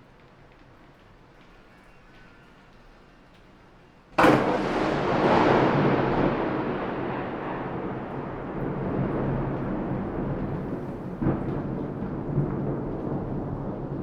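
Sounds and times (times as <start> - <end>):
thunderclap: 4.2 - 14.0.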